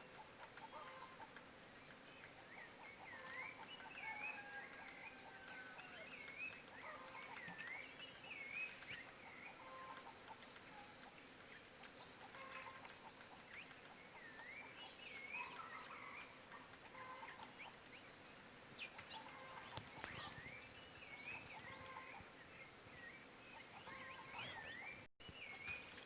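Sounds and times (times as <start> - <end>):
high insect drone: 0.0 - 26.0
sharp sweeping bird calls: 18.8 - 22.3.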